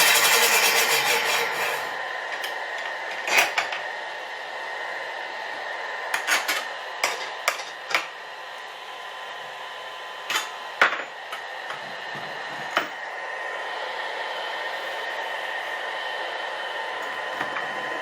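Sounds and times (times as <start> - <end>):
steady hum: 8.2 - 18.0.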